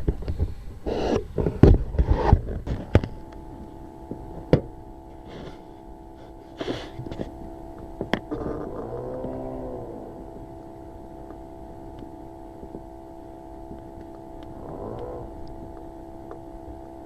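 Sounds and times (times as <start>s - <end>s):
plane engine droning: 0.0s - 17.0s.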